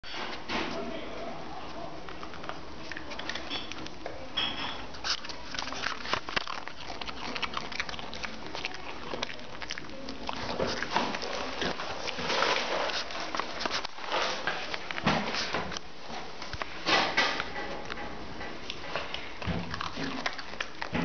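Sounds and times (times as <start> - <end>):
dog crunching dry cereal: 4.9 - 15.9, 18.8 - 21.0.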